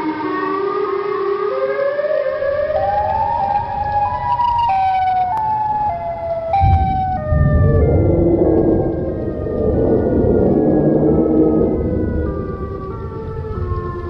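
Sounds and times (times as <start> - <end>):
siren tone stepping in pitch: 0.0 - 14.0
low rumble: 2.8 - 14.0.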